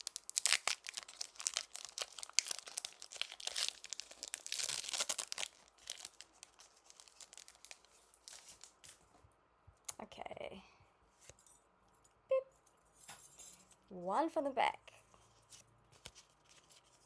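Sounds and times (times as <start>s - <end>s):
foil wrapper tearing and crinkling: 0.0s - 8.8s.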